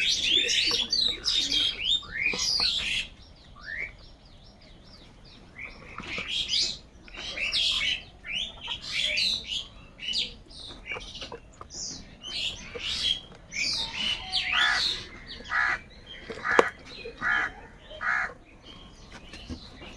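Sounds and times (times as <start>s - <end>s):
crows cawing: 13.9s - 18.4s.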